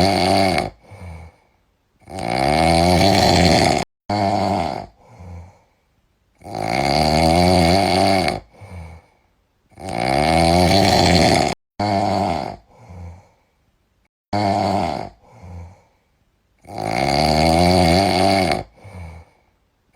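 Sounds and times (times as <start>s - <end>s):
cat snoring: 0.0s - 1.4s, 2.0s - 5.6s, 6.4s - 9.1s, 9.7s - 13.3s, 14.4s - 15.9s, 16.6s - 19.4s.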